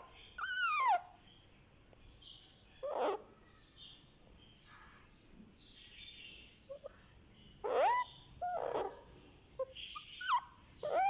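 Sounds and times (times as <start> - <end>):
parakeet chick calling: 0.0 - 1.1, 7.6 - 9.0, 9.6 - 11.0.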